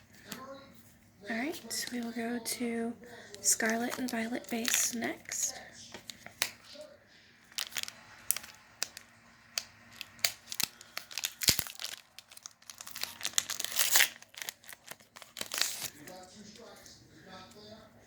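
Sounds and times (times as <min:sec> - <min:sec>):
foil wrapper tearing and crinkling: 0:03.4 - 0:06.7, 0:07.5 - 0:16.4.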